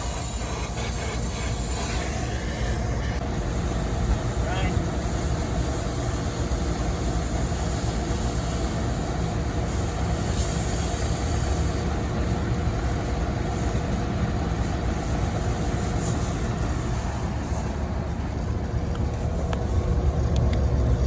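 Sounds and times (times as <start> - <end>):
torch flame burning: 0.0 - 4.4.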